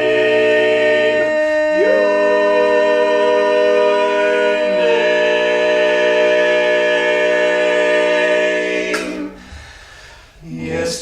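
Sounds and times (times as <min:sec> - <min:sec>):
voices holding a sung chord: 0:00.0 - 0:11.0
sharp intake of breath: 0:09.3 - 0:10.4.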